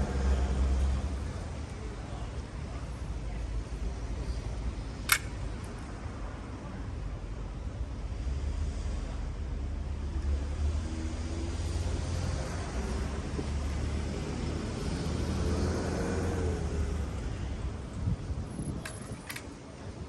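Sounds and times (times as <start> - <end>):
passing vehicle: 8.2 - 20.0
wind buffeting microphone: 17.6 - 20.0.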